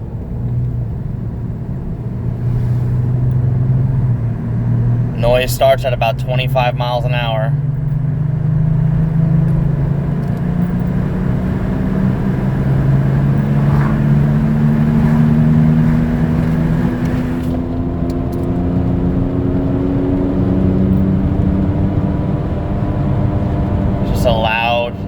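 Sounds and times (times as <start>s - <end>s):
steady road noise: 0.0s - 25.0s
wheel bearing howling and humming: 7.5s - 25.0s.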